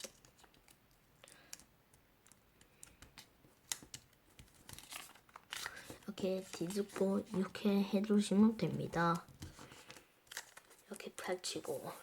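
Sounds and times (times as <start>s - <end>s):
paper rustling and creasing: 2.8s - 8.1s, 8.8s - 12.0s.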